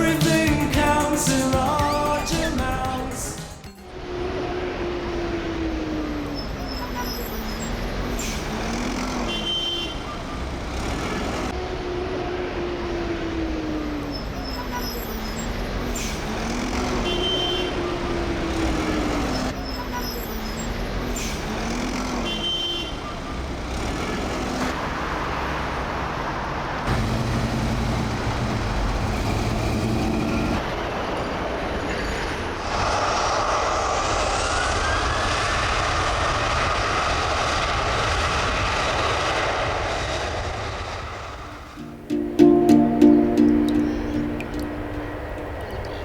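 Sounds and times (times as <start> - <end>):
road traffic noise: 0.0 - 46.0
steady roar with rising whine: 32.5 - 46.0.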